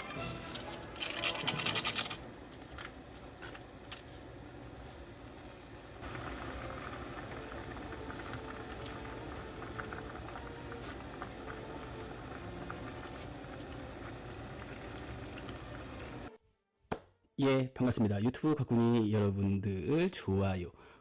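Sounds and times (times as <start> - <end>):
water boiling and bubbling: 0.4 - 16.3.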